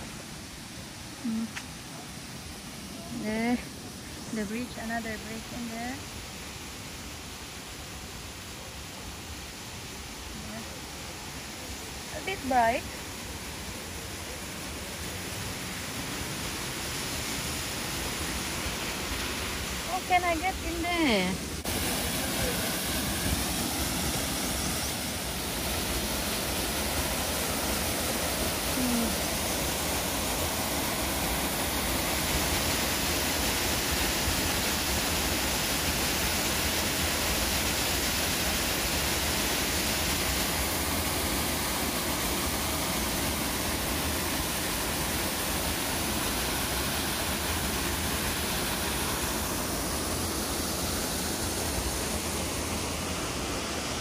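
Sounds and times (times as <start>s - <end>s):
stream flowing over rocks: 0.0s - 54.0s.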